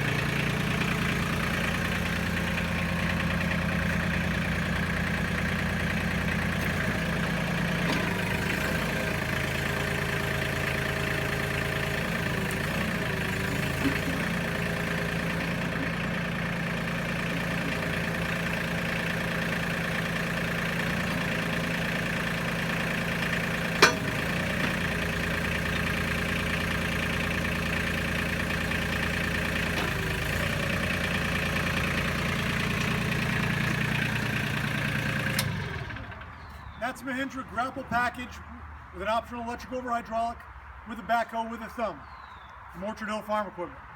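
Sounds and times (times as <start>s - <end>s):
tractor diesel engine running: 0.0s - 40.3s.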